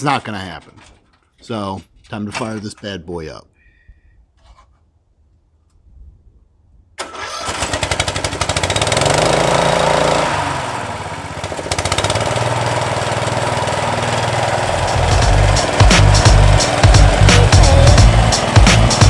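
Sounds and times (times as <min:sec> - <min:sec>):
lawn mower engine: 0:07.0 - 0:19.0.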